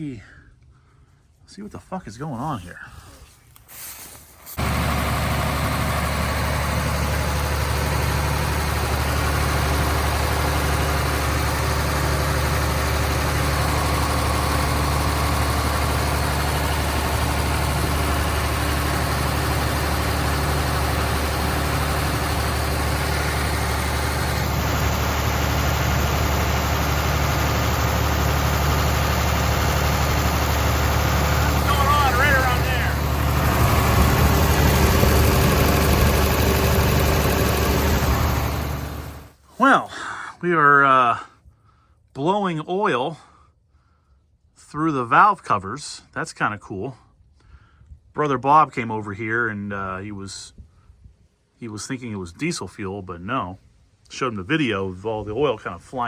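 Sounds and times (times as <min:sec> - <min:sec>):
diesel engine idling: 0:04.5 - 0:39.4.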